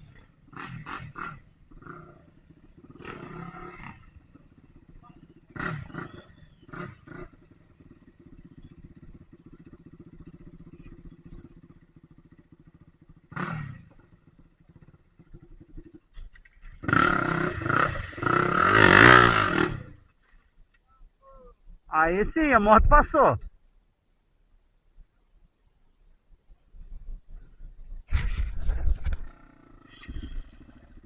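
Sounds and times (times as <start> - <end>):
dirt bike engine revving: 0.0 - 20.1, 28.2 - 31.0.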